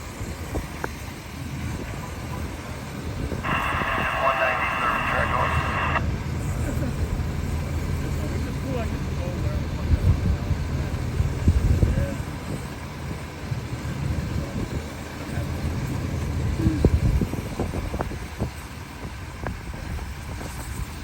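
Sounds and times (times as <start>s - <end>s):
faint distant voices: 3.4s - 10.5s.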